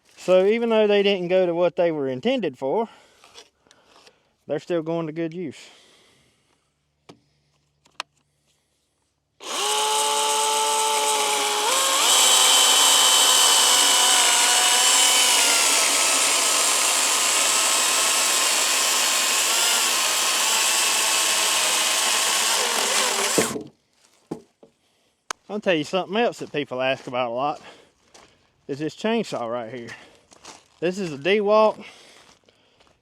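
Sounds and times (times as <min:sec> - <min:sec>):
electric chainsaw whine cutting wood: 0:09.4 - 0:23.6.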